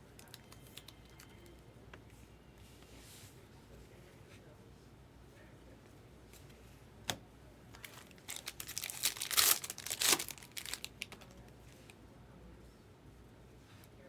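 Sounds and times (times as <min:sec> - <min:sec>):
wrapper crinkling: 0:07.8 - 0:11.4
foil pack tearing open: 0:08.3 - 0:11.3.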